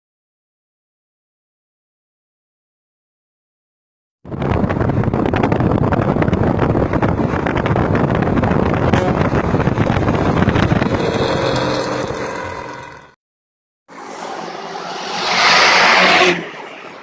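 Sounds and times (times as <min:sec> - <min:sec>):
bus engine with loud exhaust: 0:04.3 - 0:13.2.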